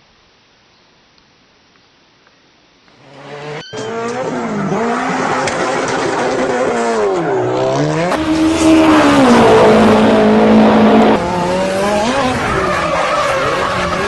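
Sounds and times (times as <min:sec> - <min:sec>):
engine revving: 0:03.0 - 0:14.0.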